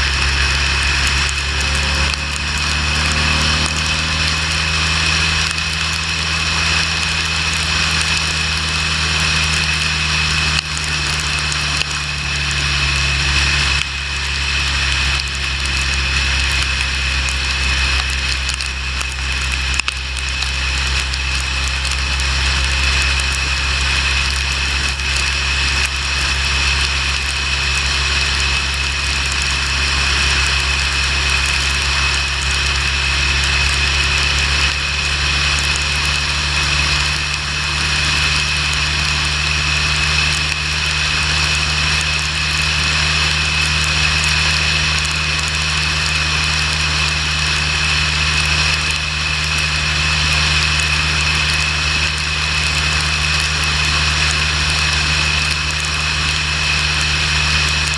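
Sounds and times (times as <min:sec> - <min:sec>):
motorcycle engine drone: 0:00.0 - 0:57.9
wind and road noise: 0:00.0 - 0:57.9.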